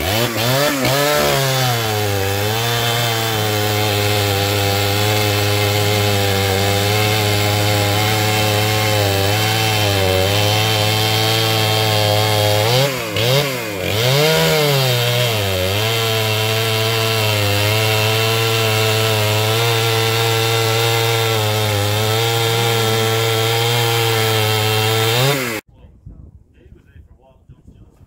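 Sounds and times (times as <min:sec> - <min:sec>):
chainsaw engine running: 0:00.0 - 0:25.6.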